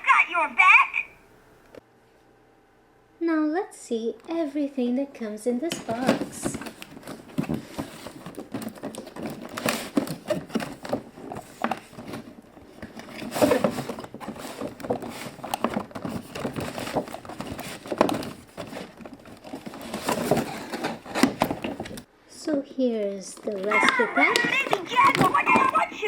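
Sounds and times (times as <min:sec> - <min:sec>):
plastic toy pieces knocking: 0:23.7 - 0:26.0.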